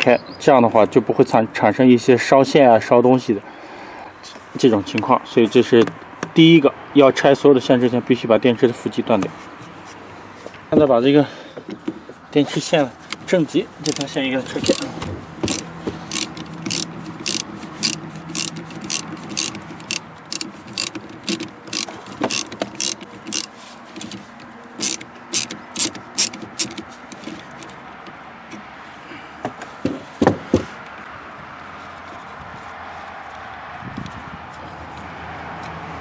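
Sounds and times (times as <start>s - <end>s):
ratchet wrench clicking: 13.8s - 27.7s.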